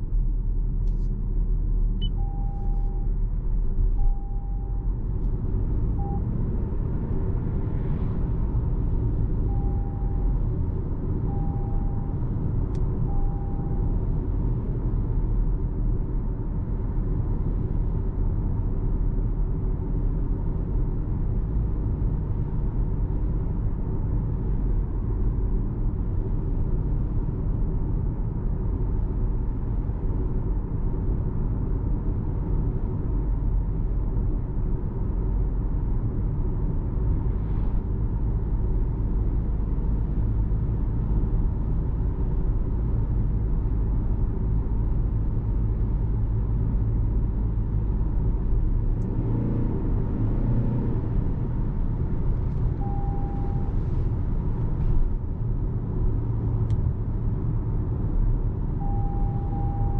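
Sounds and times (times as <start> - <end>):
road and tyre rumble: 0.0 - 59.9
short electronic beeps: 2.0 - 3.1, 3.9 - 4.9, 6.0 - 6.3, 9.5 - 10.3, 11.3 - 12.2, 13.1 - 14.0, 52.8 - 53.9, 58.8 - 59.9.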